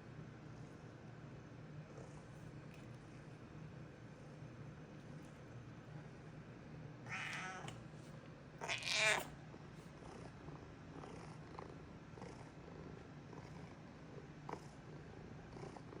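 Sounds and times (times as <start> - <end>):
steady low hum: 0.0 - 16.0
cat meowing: 7.1 - 7.7, 8.6 - 9.3.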